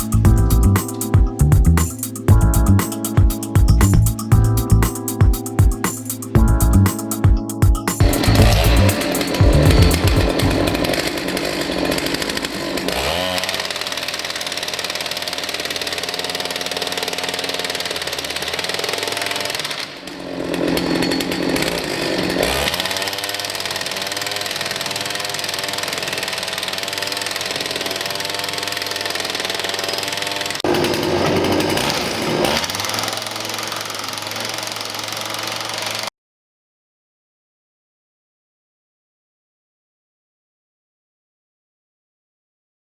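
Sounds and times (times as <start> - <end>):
impact wrench hammering rattle: 4.9 - 36.1
small petrol engine running: 8.0 - 36.1.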